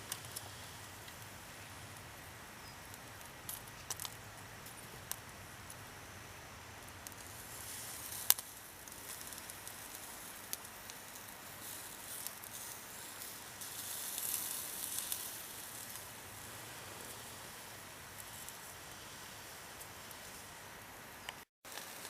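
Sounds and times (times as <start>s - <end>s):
food sizzling: 0.0s - 22.0s
pops and crackles: 2.9s - 5.2s, 7.0s - 16.1s.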